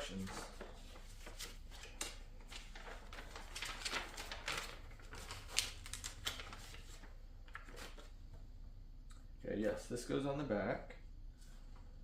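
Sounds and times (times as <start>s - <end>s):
paper rustling and crinkling: 0.0s - 8.2s.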